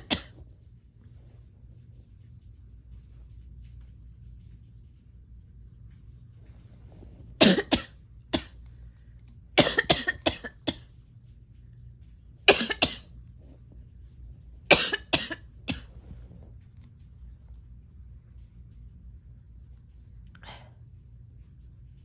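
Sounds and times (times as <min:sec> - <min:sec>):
person coughing: 0:00.0 - 0:00.4, 0:07.4 - 0:08.6, 0:09.6 - 0:10.9, 0:12.5 - 0:13.1, 0:14.7 - 0:16.2.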